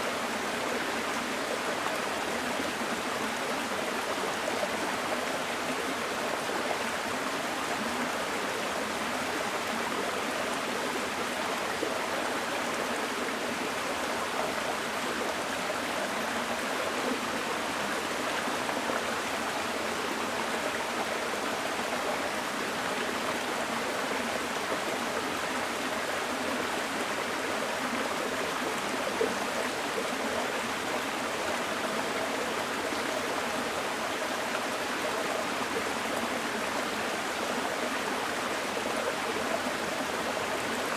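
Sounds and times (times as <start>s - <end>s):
stream flowing over rocks: 0.0s - 40.9s.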